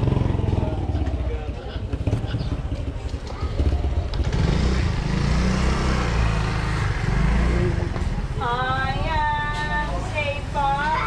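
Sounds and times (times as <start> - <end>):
vehicle engine passing: 0.0 - 11.0
singing voice: 8.4 - 11.0.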